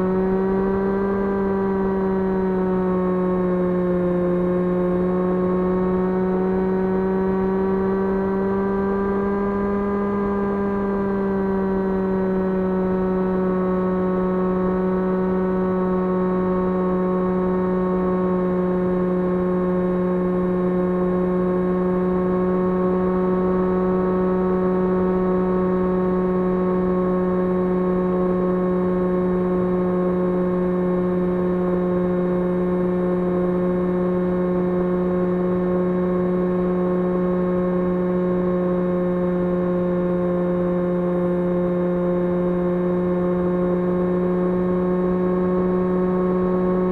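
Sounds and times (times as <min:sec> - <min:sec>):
model plane motor droning whir: 0:00.0 - 0:46.9.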